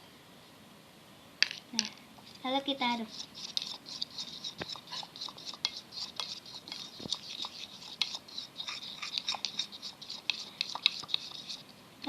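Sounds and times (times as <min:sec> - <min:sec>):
spoon stirring in container: 0:03.0 - 0:11.7.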